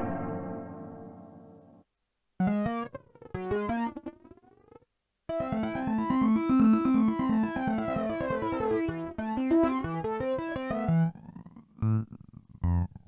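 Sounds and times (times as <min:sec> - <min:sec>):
synthesizer brass-like tone: 0:00.0 - 0:01.6
fast synthesizer arpeggio: 0:02.4 - 0:04.0, 0:05.3 - 0:11.2
synthesizer plucked notes: 0:02.4 - 0:04.1, 0:05.3 - 0:13.0.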